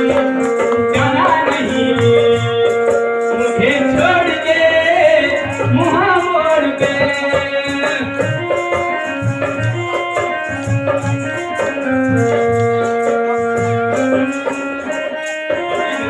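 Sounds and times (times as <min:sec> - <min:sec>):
keyboard melody: 0:00.0 - 0:16.0
tabla-like drums: 0:00.0 - 0:16.0
shaker: 0:05.1 - 0:16.0.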